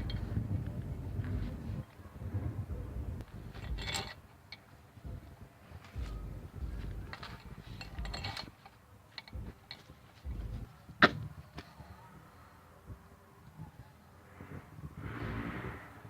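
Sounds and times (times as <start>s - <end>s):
tools knocking and thudding: 3.2s - 5.3s, 6.0s - 11.7s.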